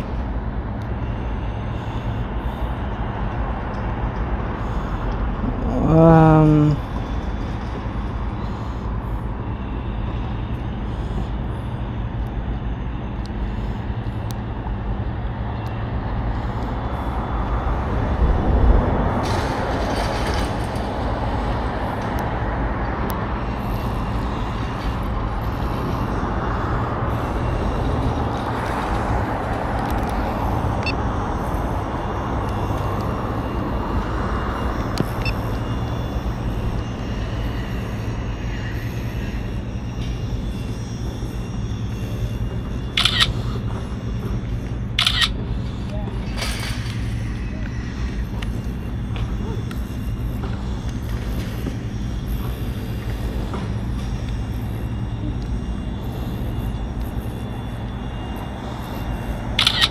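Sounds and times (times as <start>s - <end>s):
road traffic passing: 0.0s - 59.9s
heavy vehicle passing: 14.6s - 49.4s.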